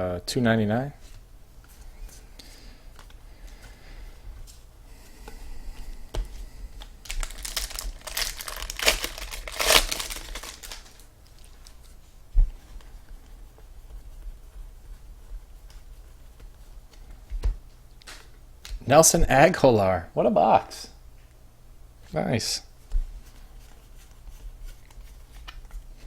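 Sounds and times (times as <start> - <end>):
wrapper tearing and crinkling: 7.0 - 11.8.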